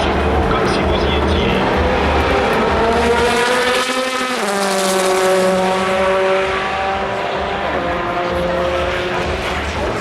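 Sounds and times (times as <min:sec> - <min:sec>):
race car engine passing: 0:00.0 - 0:10.0.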